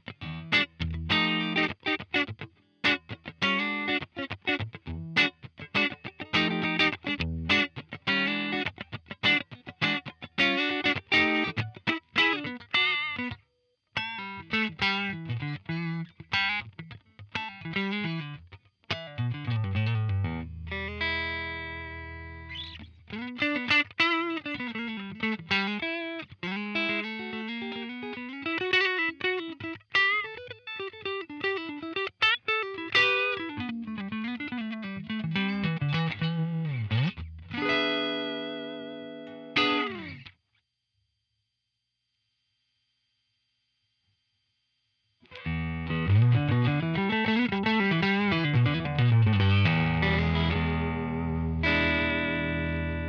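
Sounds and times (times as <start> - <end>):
electric guitar lead lines: 0.0 - 13.4, 14.0 - 40.3, 45.2 - 53.0
ringing electric guitar chord: 37.6 - 40.2, 45.3 - 53.0.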